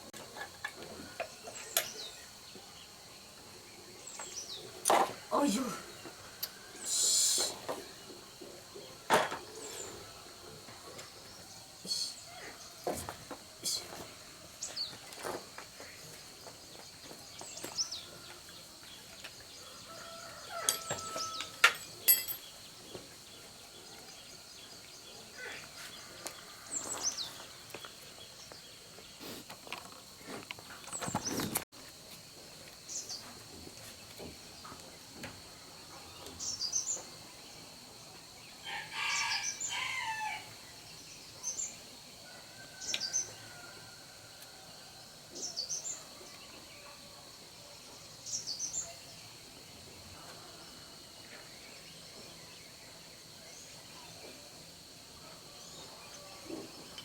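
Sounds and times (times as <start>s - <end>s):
high insect drone: 1.0s - 8.4s.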